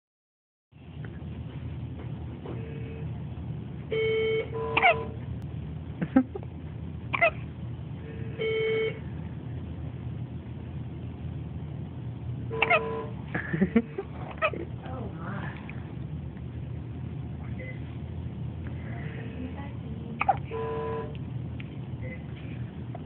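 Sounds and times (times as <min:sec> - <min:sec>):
squeaky hiccups: 0:04.7 - 0:05.1, 0:07.1 - 0:07.4, 0:12.6 - 0:13.0, 0:20.2 - 0:20.5.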